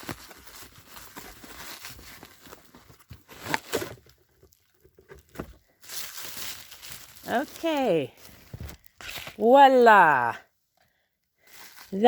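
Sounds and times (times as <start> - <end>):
packaging rustling and tearing: 0.0 - 9.4.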